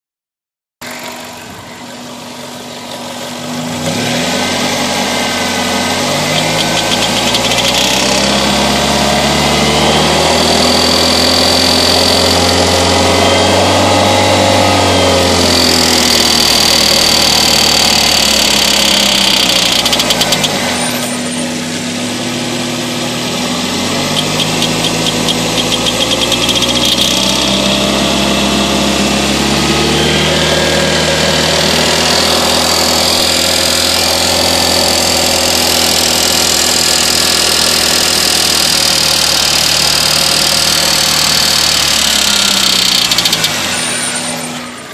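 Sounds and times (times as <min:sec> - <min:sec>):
car engine running: 0:00.8 - 0:44.9
rapid engine ticking: 0:05.5 - 0:13.6, 0:14.8 - 0:20.9, 0:23.9 - 0:28.0, 0:31.0 - 0:44.0.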